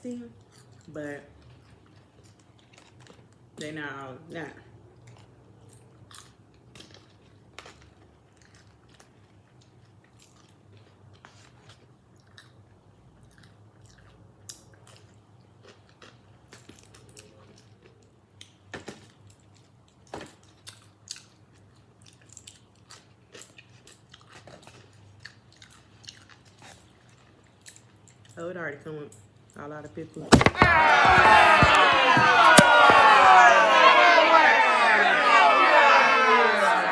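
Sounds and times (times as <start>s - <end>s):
chewing and biting food: 22.0s - 26.9s.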